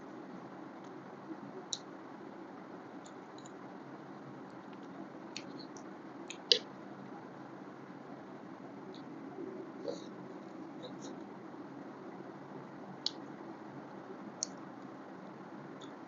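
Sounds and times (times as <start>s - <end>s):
steady low hiss: 0.0s - 16.0s.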